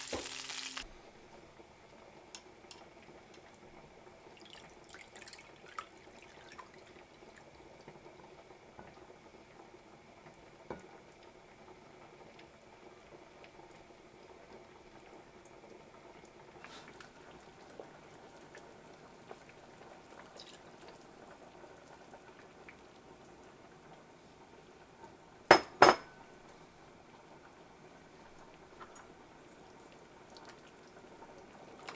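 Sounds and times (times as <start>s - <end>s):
dishware clinking: 25.5s - 26.1s.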